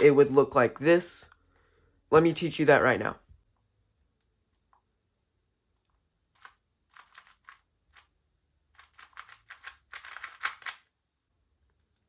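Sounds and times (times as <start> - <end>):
puzzle cube plastic clicks: 6.2 - 10.9.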